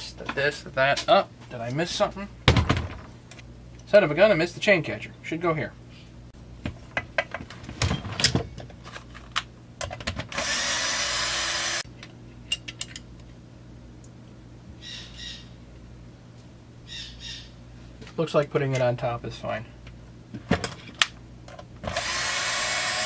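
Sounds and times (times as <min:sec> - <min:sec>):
power drill running: 0:10.3 - 0:11.8, 0:21.8 - 0:23.0.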